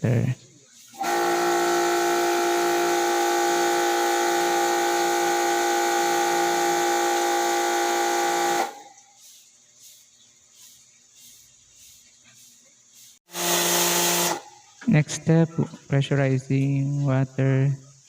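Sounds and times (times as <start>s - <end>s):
water spray hissing: 0.1s - 18.0s
pressure washer whining: 0.8s - 9.0s, 13.2s - 15.0s.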